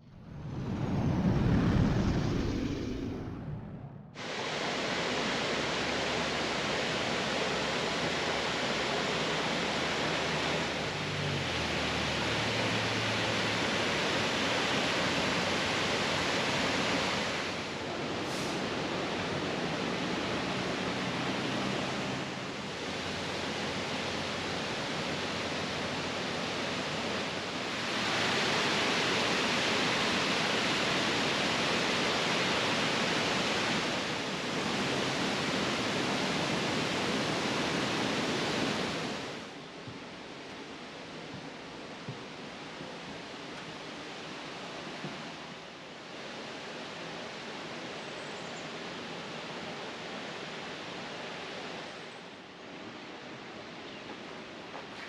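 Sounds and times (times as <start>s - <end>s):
waterfall rushing: 4.2s - 39.5s.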